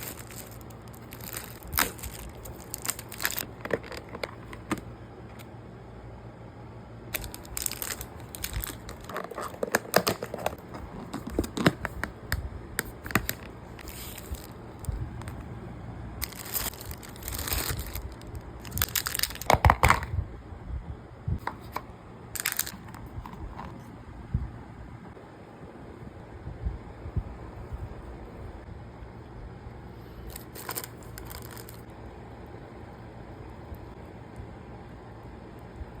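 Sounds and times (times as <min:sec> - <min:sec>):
crinkling and rustling: 0:00.0 - 0:05.5, 0:07.1 - 0:15.5, 0:16.2 - 0:20.1, 0:21.4 - 0:24.0, 0:30.3 - 0:31.9.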